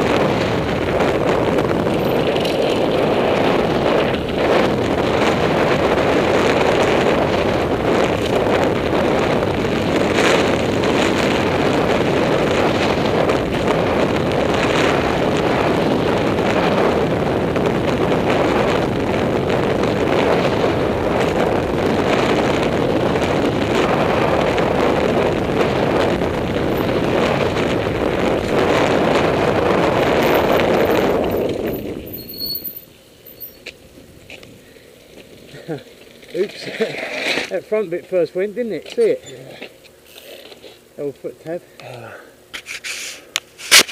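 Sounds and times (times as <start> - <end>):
wind on microphone: 0.0 - 34.8
mountain bike rattling: 0.0 - 40.8.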